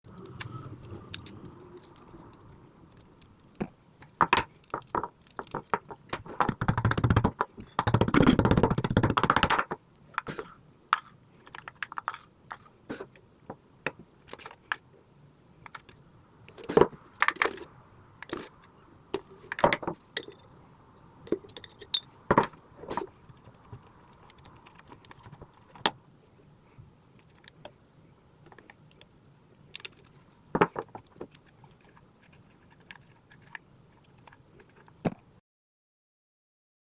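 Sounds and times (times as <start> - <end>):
utensils and containers clinking: 21.3 - 23.6.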